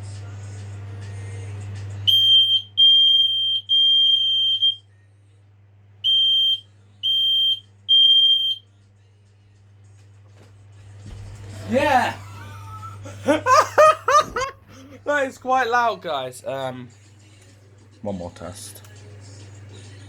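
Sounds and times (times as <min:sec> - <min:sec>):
smoke alarm beeping: 0:02.1 - 0:04.8, 0:06.0 - 0:08.6.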